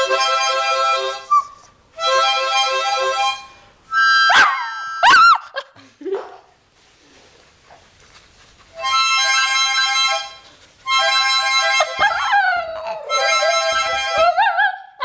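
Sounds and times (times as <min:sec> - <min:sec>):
harmonica chords: 0:00.0 - 0:05.1, 0:08.8 - 0:14.4
dog howling: 0:11.9 - 0:14.6.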